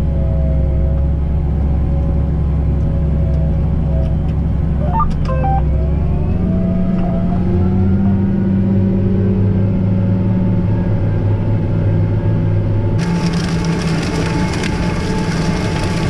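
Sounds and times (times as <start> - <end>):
brief high tones: 4.8 - 5.8.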